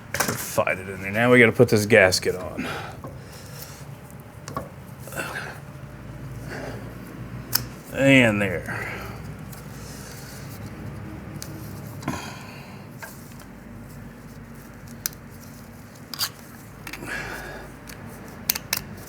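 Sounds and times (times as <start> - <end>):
low steady hum: 0.0 - 19.0
soft rustling and scraping: 0.4 - 19.0
metal parts clicking and tapping: 7.5 - 7.9, 14.9 - 17.0, 17.7 - 19.0.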